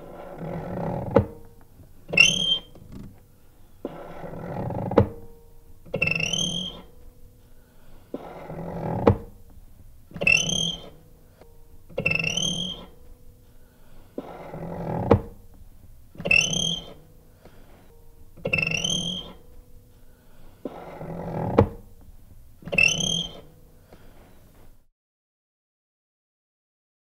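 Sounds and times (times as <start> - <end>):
gate hinge creaking: 0.2 - 7.2, 8.2 - 13.2, 16.2 - 17.6, 18.2 - 19.7, 22.6 - 23.6.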